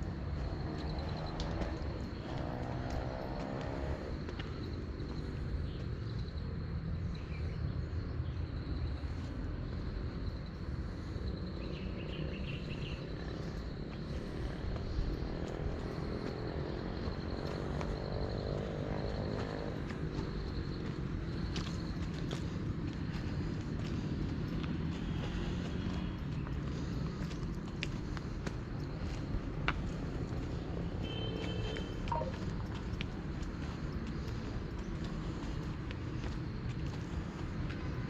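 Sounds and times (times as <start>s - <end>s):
motor engine revving: 0.7s - 4.2s.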